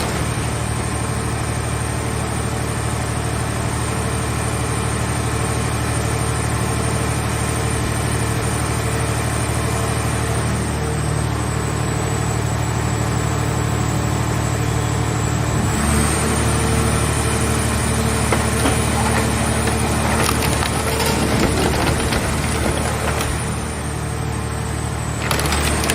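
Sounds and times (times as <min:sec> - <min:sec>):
hydraulic baler running: 0:00.0 - 0:04.3, 0:05.0 - 0:25.9
car body cracking and crunching: 0:17.7 - 0:24.0, 0:25.1 - 0:25.9.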